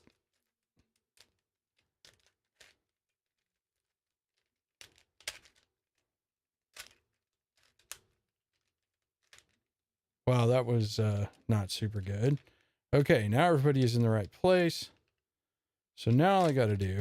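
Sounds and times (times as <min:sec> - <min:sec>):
puzzle cube layers clicking: 0:04.3 - 0:06.0, 0:06.7 - 0:09.6, 0:16.1 - 0:17.0.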